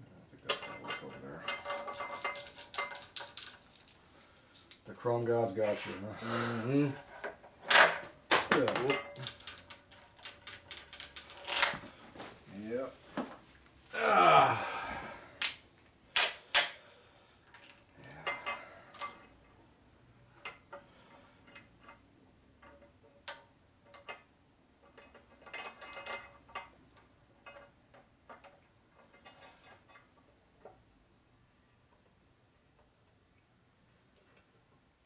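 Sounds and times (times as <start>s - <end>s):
metal parts and tools clinking: 0.5s - 5.0s, 7.6s - 12.0s, 17.5s - 19.3s, 25.0s - 26.7s.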